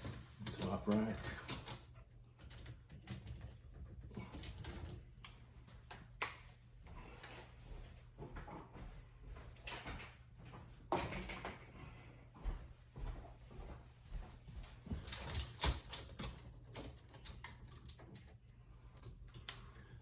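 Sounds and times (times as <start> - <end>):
dishwasher rack clicking and rattling: 0.0 - 2.0, 15.0 - 18.2.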